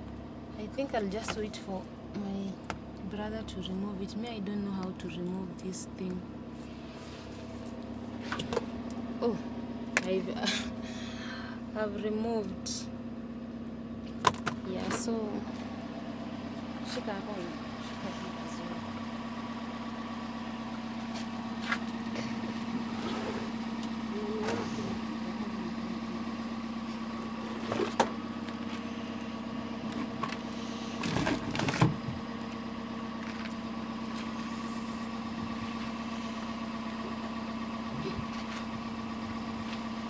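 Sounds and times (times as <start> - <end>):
car engine idling: 0.0 - 40.0
clunks: 21.1 - 25.1.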